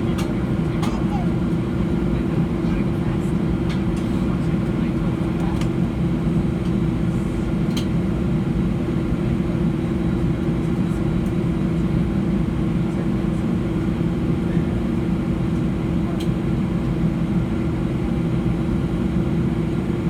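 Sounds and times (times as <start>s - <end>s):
airplane cabin drone: 0.0s - 20.0s.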